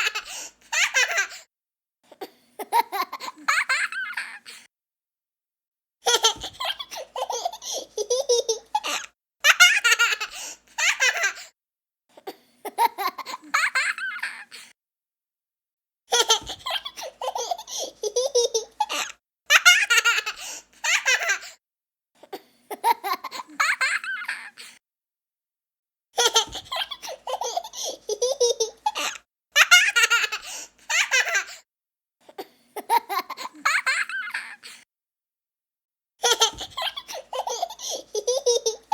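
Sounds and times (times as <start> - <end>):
young child laughing: 0.0 - 1.4, 2.6 - 4.7, 6.0 - 11.5, 12.7 - 14.7, 16.1 - 21.6, 26.2 - 31.6, 32.8 - 34.8, 36.2 - 38.9.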